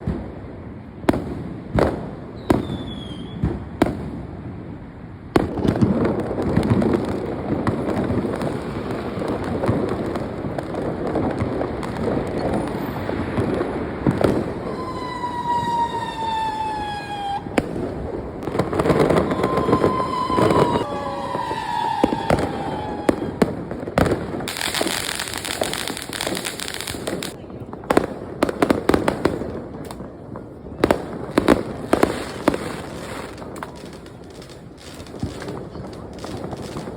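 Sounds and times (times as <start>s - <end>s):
fireworks bangs and crackle: 0.0s - 36.9s
fireworks whistles falling in pitch: 2.4s - 3.6s, 14.2s - 27.4s.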